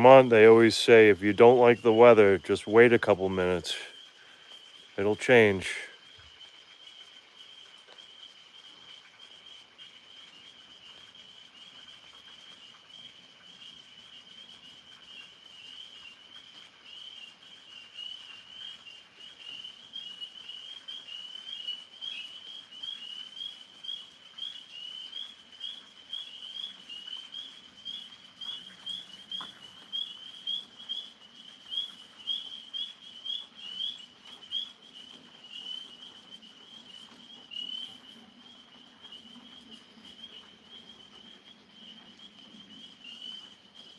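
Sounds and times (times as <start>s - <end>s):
tree frogs chorus: 0.0s - 43.9s
loud frog peeps: 14.4s - 43.9s.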